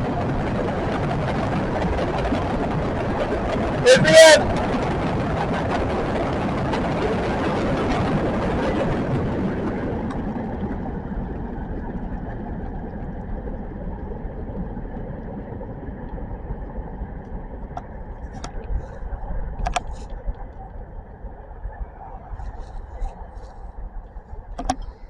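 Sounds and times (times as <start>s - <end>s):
freight train rumble: 0.0s - 11.4s.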